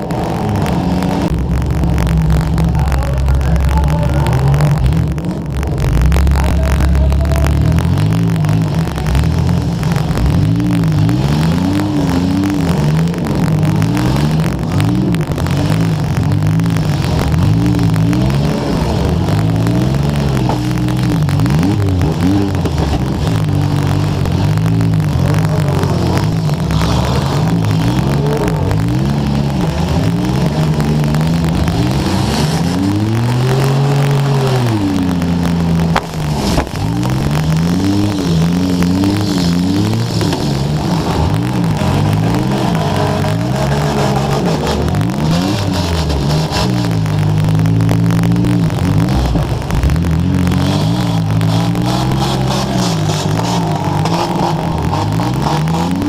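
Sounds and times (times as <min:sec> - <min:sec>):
car engine revving hard: 0:00.0 - 0:56.0.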